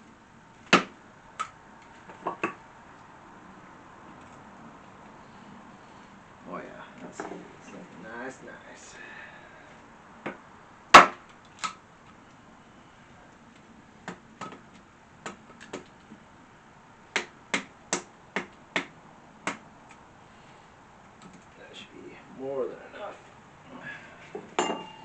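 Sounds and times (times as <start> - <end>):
chopping strikes on wood: 0.7 - 1.5, 11.0 - 11.2, 17.2 - 19.6.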